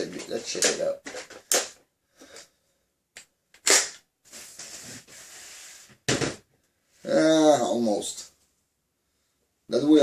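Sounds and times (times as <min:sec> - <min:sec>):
soft scraping: 0:04.3 - 0:05.9.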